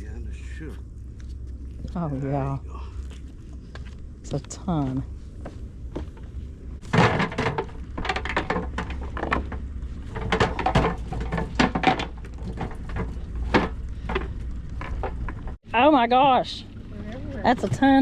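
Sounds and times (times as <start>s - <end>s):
steady low hum: 0.0s - 18.0s
knocks and thumps on a boat: 5.4s - 15.6s.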